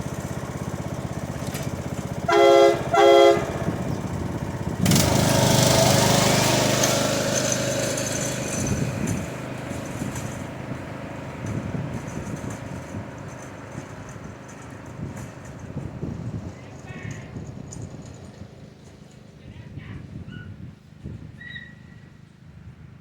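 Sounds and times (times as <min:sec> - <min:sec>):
small engine running: 0:00.0 - 0:19.6
air horn chord blasts: 0:02.2 - 0:04.2
loud rushing noise: 0:03.4 - 0:09.8.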